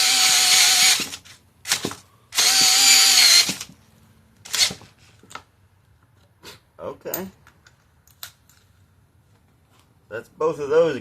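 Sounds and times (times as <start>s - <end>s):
hammer drill motor whine: 0.0s - 3.7s.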